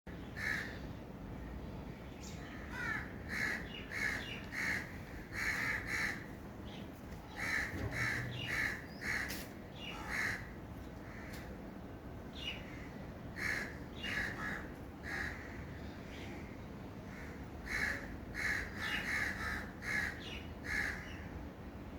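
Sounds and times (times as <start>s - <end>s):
crow cawing: 0.4s - 0.8s, 2.5s - 6.3s, 7.4s - 11.5s, 12.7s - 15.8s, 17.1s - 21.1s.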